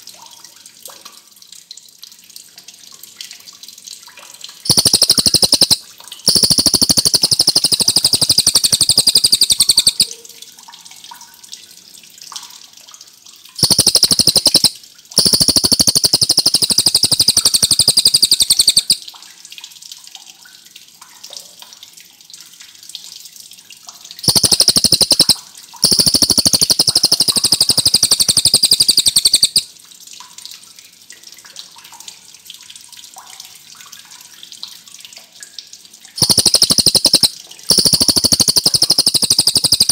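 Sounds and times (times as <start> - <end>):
bird singing high trills: 4.7 - 10.1.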